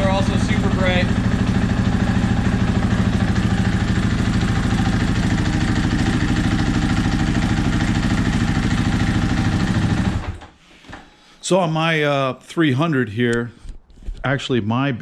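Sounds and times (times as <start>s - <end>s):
dirt bike engine idling: 0.0s - 10.4s.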